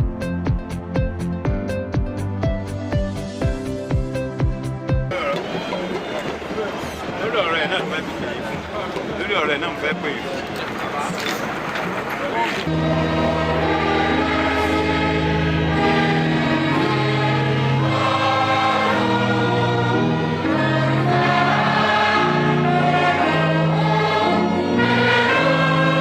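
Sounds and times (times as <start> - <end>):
choir singing held chords: 12.7 - 26.0.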